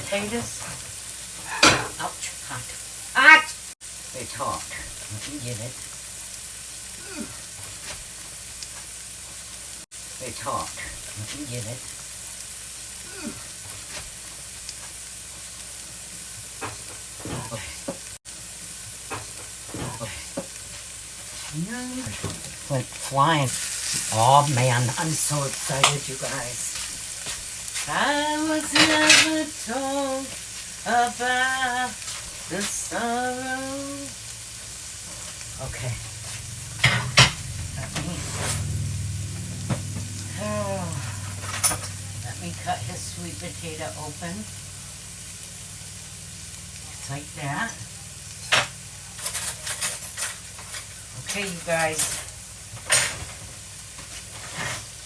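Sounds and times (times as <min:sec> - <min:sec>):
food sizzling on electric grill: 0:00.0 - 0:55.0
steady low hum: 0:35.5 - 0:45.0.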